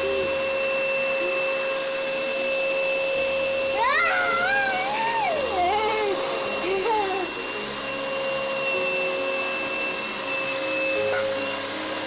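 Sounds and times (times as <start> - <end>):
vacuum cleaner running: 0.0 - 12.0
child's voice sliding in pitch: 3.7 - 7.4.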